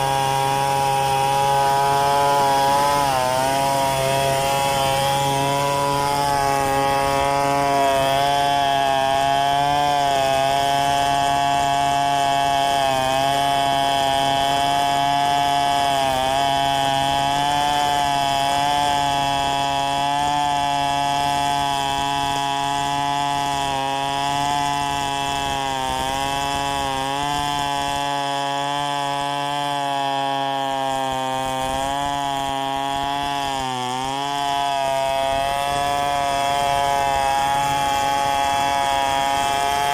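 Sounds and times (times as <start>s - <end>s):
chainsaw cutting a log: 0.0s - 39.9s.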